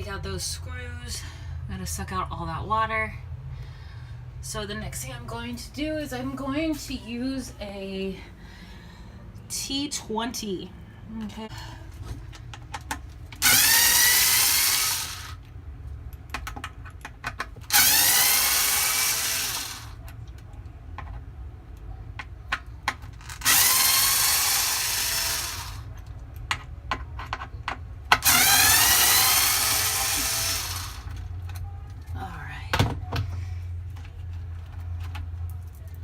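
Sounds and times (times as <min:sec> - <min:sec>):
power drill spinning: 0:13.4 - 0:15.5, 0:17.7 - 0:20.0, 0:23.2 - 0:25.9, 0:28.2 - 0:31.4.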